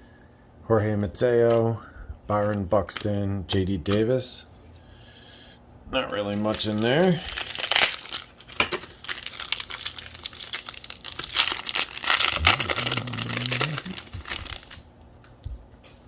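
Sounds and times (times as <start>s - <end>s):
plastic wrapper crinkling and tearing: 6.2s - 15.4s.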